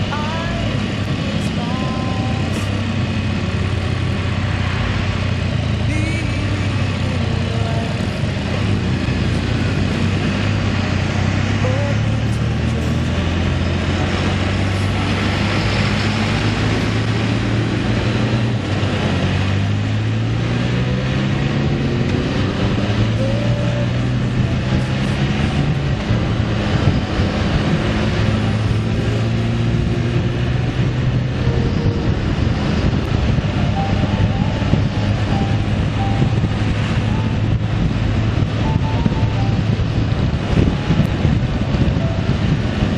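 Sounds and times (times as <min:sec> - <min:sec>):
road and wind noise: 0:00.0 - 0:42.9
vehicle engine running: 0:00.0 - 0:42.9.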